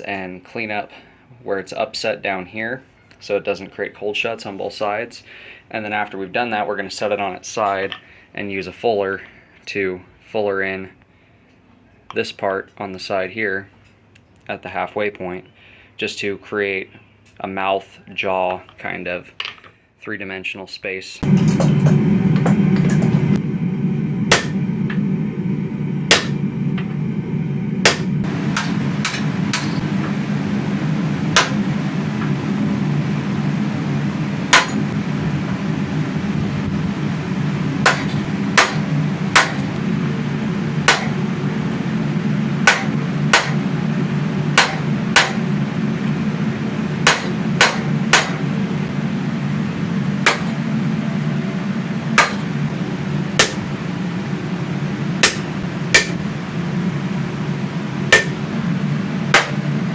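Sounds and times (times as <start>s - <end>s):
hammer striking metal on anvil: 21.2s - 23.4s, 24.3s - 25.1s, 26.1s - 27.0s, 27.8s - 30.3s, 31.3s - 32.4s, 34.5s - 35.0s, 37.8s - 39.8s, 40.8s - 41.2s, 42.6s - 43.7s, 44.6s - 45.7s, 47.0s - 48.6s, 50.2s - 50.7s, 52.2s - 53.8s, 55.2s - 56.3s, 58.1s - 58.6s, 59.3s - 59.7s
steady low hum: 21.2s - 59.9s.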